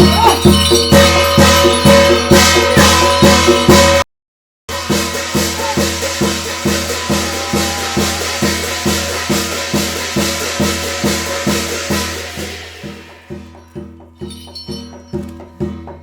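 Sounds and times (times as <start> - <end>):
drum beaten in quick rhythm: 0.0 - 4.0, 4.7 - 16.0
metallic jingling: 0.0 - 4.0, 13.5 - 15.6.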